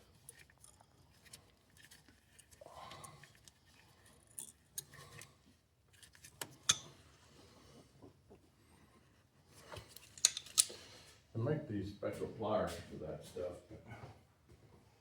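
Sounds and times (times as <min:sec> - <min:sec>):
pliers clicking on wire: 0:10.0 - 0:10.7.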